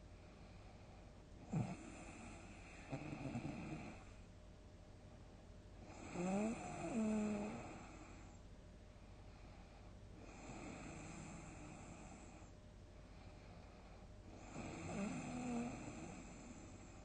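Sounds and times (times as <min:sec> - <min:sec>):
person snoring loudly: 0:05.9 - 0:07.8, 0:14.5 - 0:16.4.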